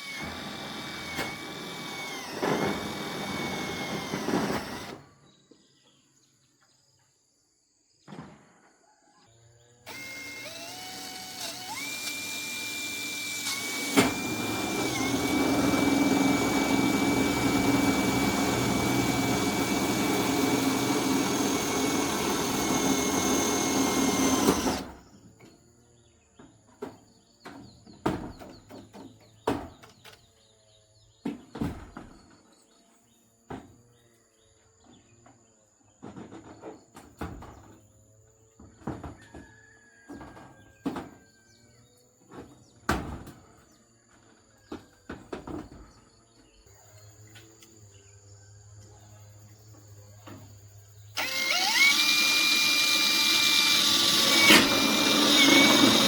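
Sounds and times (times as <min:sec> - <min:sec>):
power tool motor whining: 0:00.0 - 0:05.1, 0:09.8 - 0:25.2, 0:51.0 - 0:56.0.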